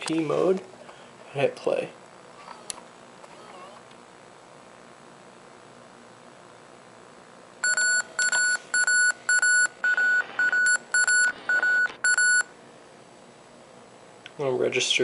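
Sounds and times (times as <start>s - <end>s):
camcorder warning beeps: 7.6s - 12.5s.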